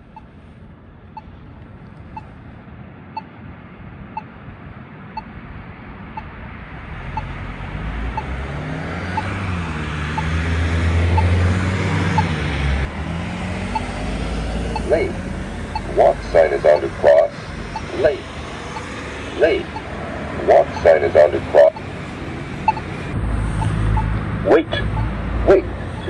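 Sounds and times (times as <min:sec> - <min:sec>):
pedestrian signal ticking: 0:00.0 - 0:00.4, 0:07.1 - 0:26.0
car engine and tyre noise: 0:00.0 - 0:26.0.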